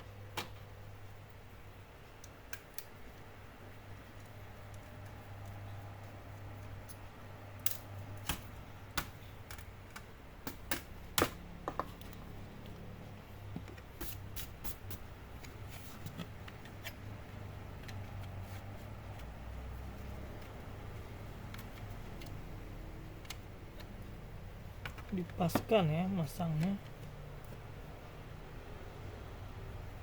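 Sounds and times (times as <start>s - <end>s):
clicks of laptop parts handled: 7.6s - 12.2s, 21.4s - 22.5s.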